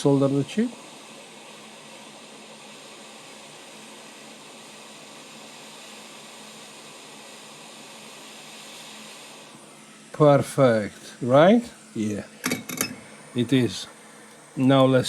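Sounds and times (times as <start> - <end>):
hot-air station hissing: 0.0 - 15.0.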